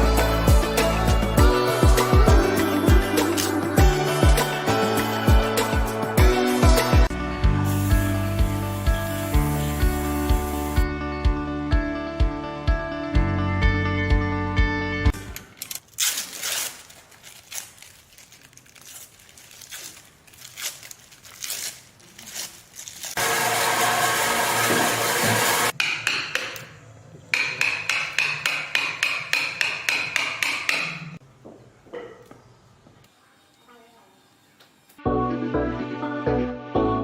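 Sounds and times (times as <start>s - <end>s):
power tool running: 23.2s - 25.7s.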